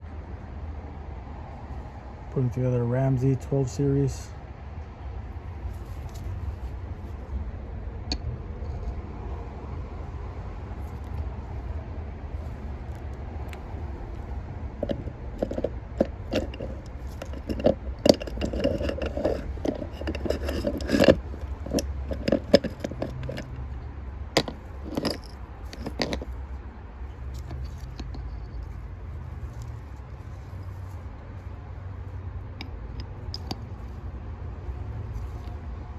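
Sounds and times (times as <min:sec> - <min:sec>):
steady low hum: 0:00.0 - 0:35.9
metal parts clinking and scraping: 0:05.7 - 0:07.2, 0:10.8 - 0:31.0, 0:32.6 - 0:34.2, 0:35.1 - 0:35.6.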